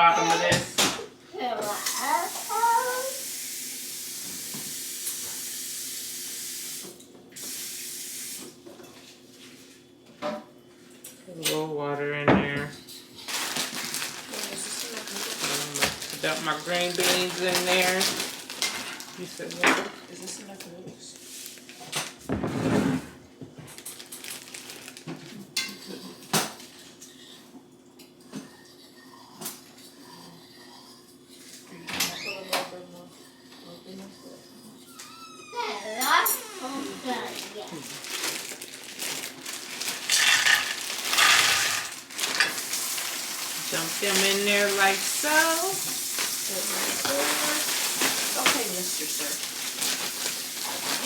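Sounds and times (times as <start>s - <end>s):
kitchen faucet running: 1.6s - 8.5s, 40.0s - 51.0s
pans and utensils clinking: 39.8s - 51.0s.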